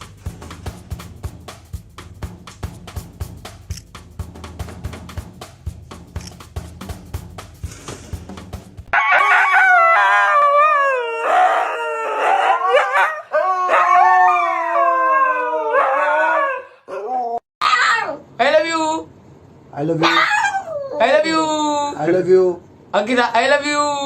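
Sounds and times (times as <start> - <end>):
dog howling: 9.0 - 18.2, 20.0 - 21.2.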